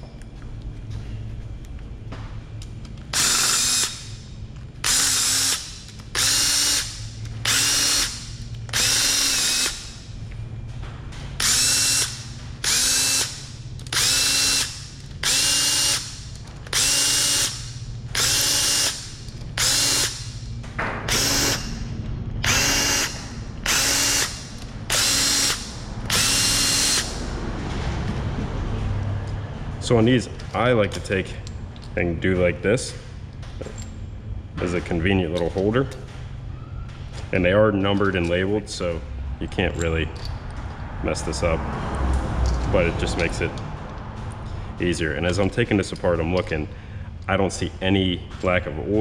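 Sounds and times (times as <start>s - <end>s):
power tool motor whirring: 3.1s - 10.1s, 11.4s - 20.5s, 21.1s - 27.3s.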